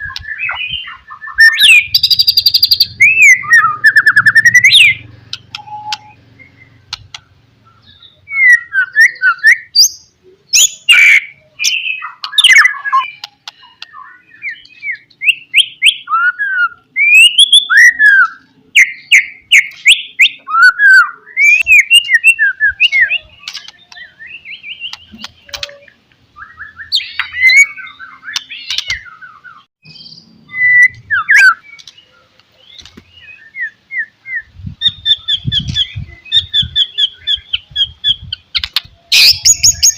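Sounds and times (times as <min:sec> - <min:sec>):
bird singing whistled phrases: 0:00.0 - 0:06.8, 0:07.6 - 0:31.8, 0:32.7 - 0:39.9.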